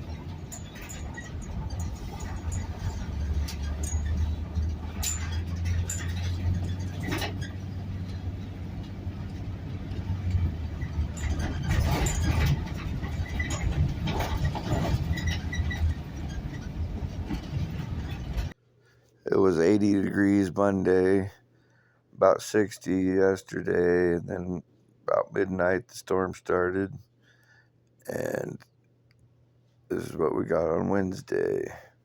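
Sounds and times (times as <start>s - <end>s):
vehicle engine and road rumble: 0.0s - 18.6s, 28.1s - 28.6s.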